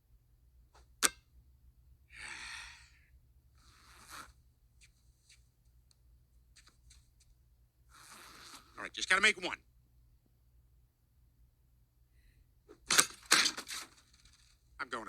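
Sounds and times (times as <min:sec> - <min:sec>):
sharp click: 0:00.8 - 0:01.2.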